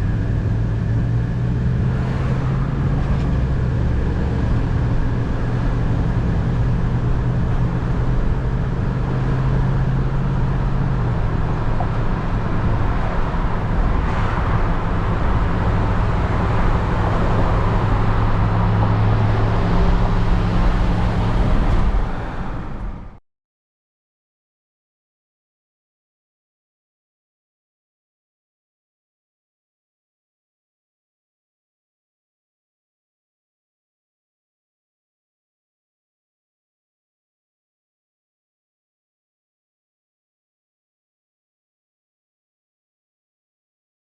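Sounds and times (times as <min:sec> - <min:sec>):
road noise: 0:00.0 - 0:23.2
vehicle engine running: 0:00.0 - 0:23.2.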